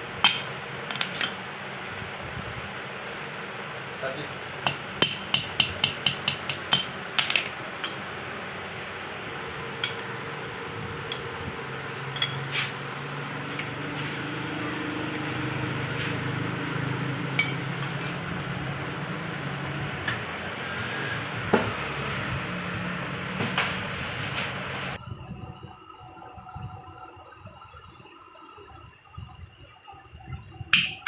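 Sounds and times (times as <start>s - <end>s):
steady low hum: 0.0s - 31.0s
hammer tapping on metal: 4.7s - 7.0s.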